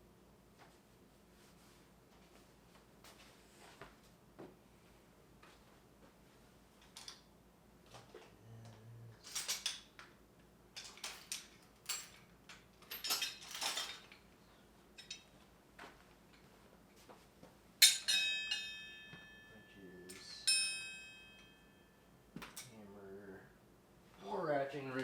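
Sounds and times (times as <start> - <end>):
metal hand tools clinking: 9.2 - 10.0, 10.8 - 14.2, 15.0 - 15.3, 17.8 - 21.8
tool striking metal and ringing: 17.8 - 22.1.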